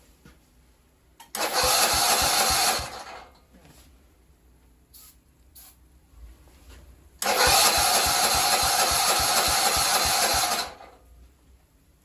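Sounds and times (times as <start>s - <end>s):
mower engine cranking: 1.4s - 3.2s, 7.2s - 10.9s.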